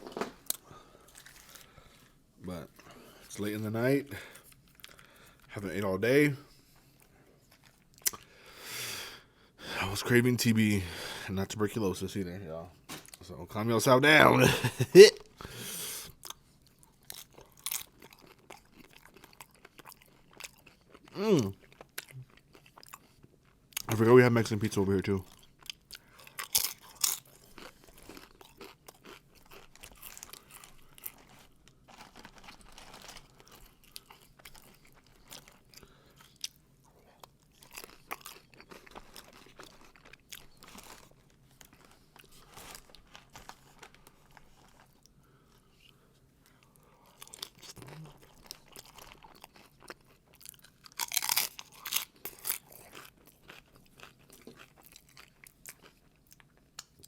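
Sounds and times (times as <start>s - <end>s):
person chewing crunchy food: 0.1s - 3.2s, 15.6s - 23.9s, 25.2s - 57.0s.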